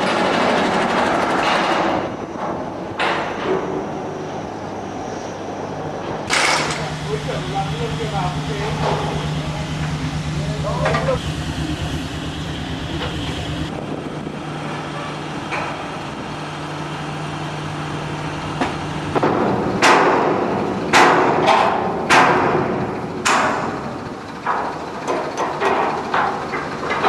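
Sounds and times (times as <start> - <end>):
construction machinery engine humming: 0.0 - 27.0
sharp hammer-like bangs: 19.2 - 23.7.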